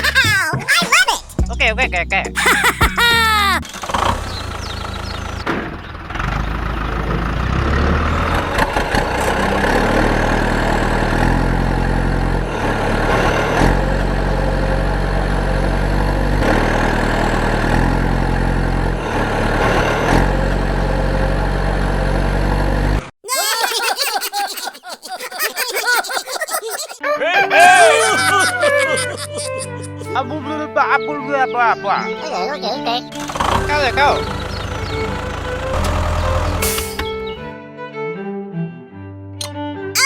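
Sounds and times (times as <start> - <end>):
engine running with shifting pitch: 3.7 - 23.1, 33.1 - 37.5.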